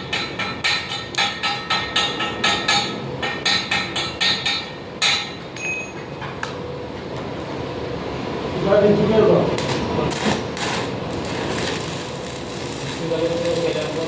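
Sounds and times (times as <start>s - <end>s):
hammer striking metal: 0.0s - 6.4s.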